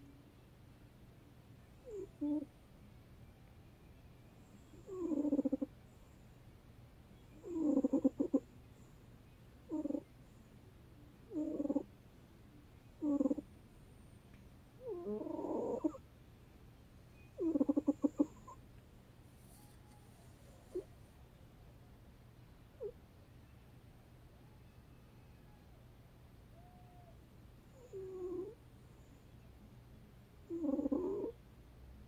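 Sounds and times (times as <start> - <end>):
pet snoring: 1.8 - 2.5, 4.6 - 5.7, 7.3 - 8.9, 9.6 - 10.1, 11.3 - 11.9, 13.0 - 13.5, 14.8 - 16.0, 17.2 - 18.6, 20.5 - 20.9, 27.7 - 28.6, 30.4 - 31.4.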